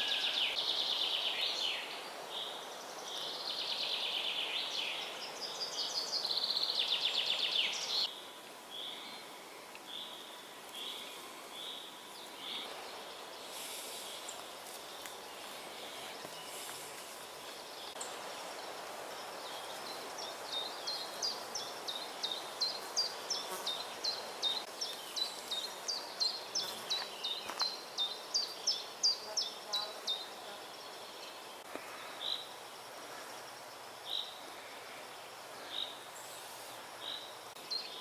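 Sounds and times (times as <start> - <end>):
faint outdoor hiss: 0.0 - 38.0.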